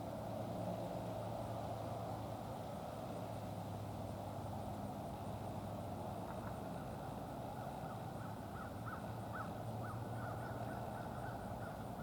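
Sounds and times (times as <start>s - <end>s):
faint short bird calls: 7.8s - 11.8s.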